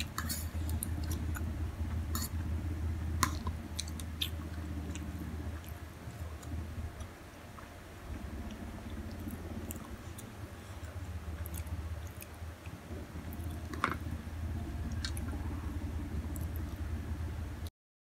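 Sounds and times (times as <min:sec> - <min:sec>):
chewing noodles: 0:00.0 - 0:02.4, 0:03.1 - 0:16.9
low steady hum: 0:00.0 - 0:17.7
wet mouth clicks: 0:14.8 - 0:15.6.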